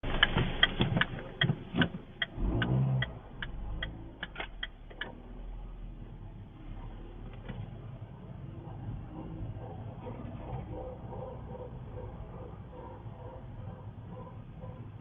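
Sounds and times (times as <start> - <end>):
sharp clicks from car: 0.0 - 5.3.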